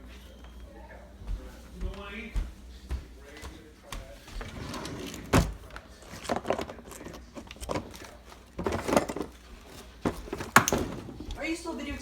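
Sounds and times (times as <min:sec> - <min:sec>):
objects knocking and thumping: 0:04.4 - 0:11.4.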